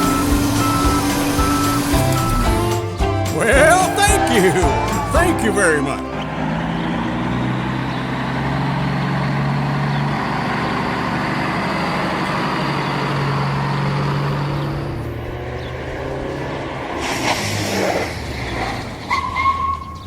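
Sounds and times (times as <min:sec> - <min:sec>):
vehicle engine running: 0:00.0 - 0:02.8, 0:05.6 - 0:19.1.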